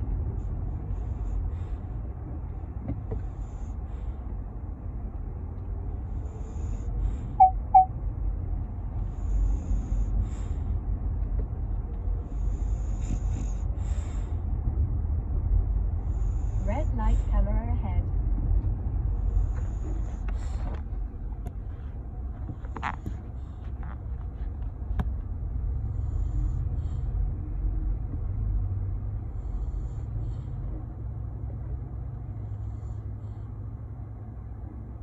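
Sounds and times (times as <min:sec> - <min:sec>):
car rumble inside cabin: 0:00.0 - 0:35.0.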